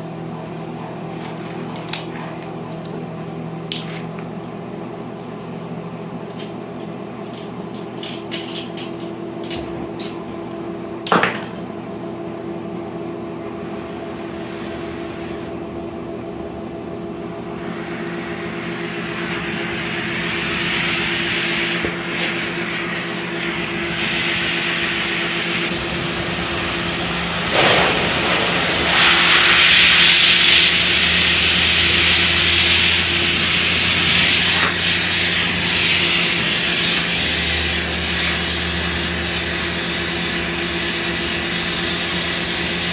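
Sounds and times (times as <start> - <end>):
steady shop hum: 0.0 - 42.9
metal tools clinking on metal: 6.3 - 10.4
gas torch flame hissing: 13.8 - 15.5, 17.6 - 42.9.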